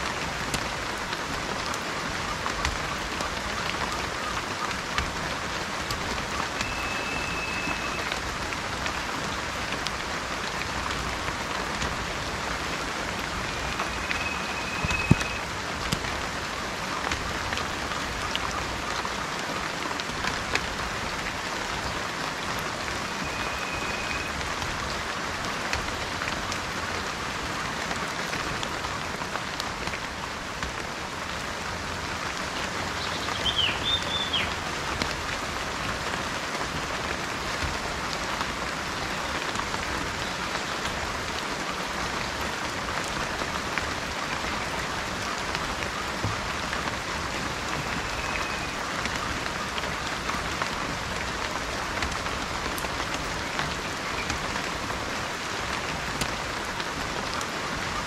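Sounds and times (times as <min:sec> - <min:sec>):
steady rain: 0:00.0 - 0:58.0
high bird calls: 0:06.5 - 0:08.2, 0:13.4 - 0:15.5, 0:23.2 - 0:24.4, 0:33.0 - 0:34.6.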